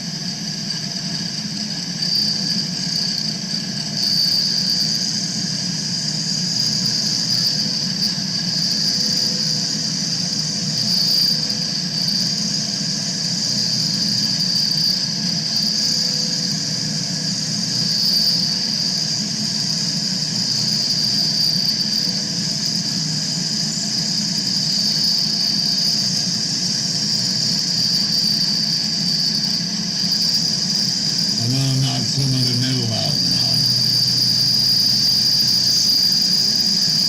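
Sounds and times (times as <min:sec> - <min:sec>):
milling cutter whine: 0:31.1 - 0:37.0
machine humming: 0:31.2 - 0:36.0.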